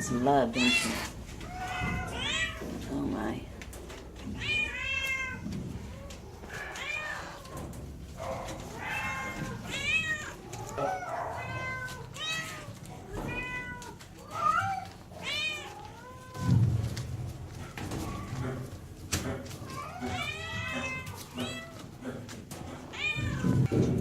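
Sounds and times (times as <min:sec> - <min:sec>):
cats meowing: 0:00.0 - 0:03.3, 0:04.0 - 0:17.0, 0:17.8 - 0:24.0.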